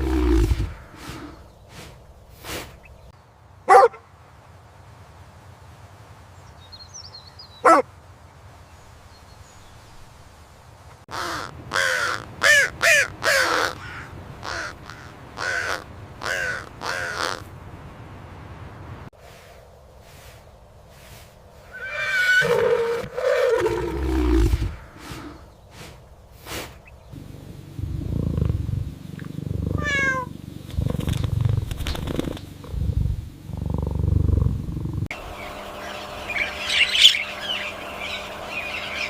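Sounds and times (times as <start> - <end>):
animal calling: 0.0 - 1.4, 27.8 - 39.0.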